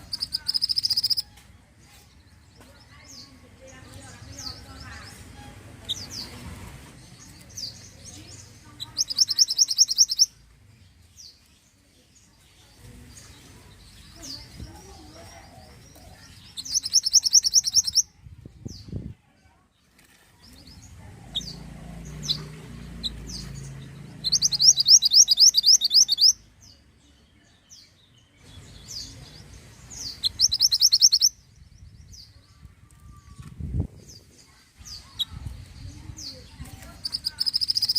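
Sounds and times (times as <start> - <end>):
short high bird chirps: 0.0 - 1.3, 9.0 - 10.3, 16.6 - 18.1, 24.2 - 26.4, 30.0 - 31.4, 37.0 - 37.9
songbird fast high trill: 24.2 - 26.4, 30.1 - 31.4.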